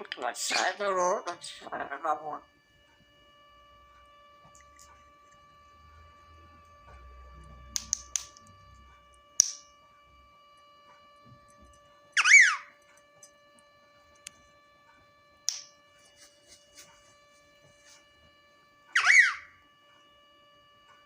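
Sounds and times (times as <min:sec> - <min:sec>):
parrot sharp chirp: 0:12.2 - 0:12.7, 0:19.0 - 0:19.5
parrot shrill calls: 0:12.2 - 0:12.7, 0:19.0 - 0:19.5.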